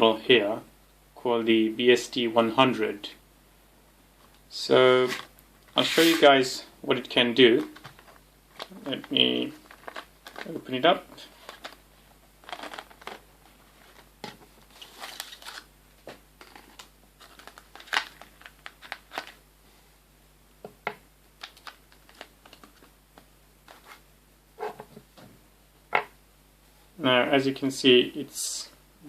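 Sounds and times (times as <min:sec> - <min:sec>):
packaging rustling and crinkling: 0:07.5 - 0:19.4, 0:21.4 - 0:24.0.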